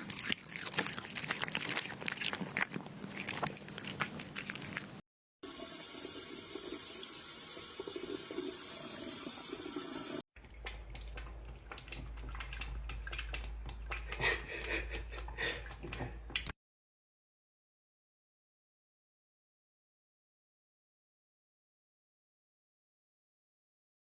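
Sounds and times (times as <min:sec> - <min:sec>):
water running from a tap: 0:05.4 - 0:16.5.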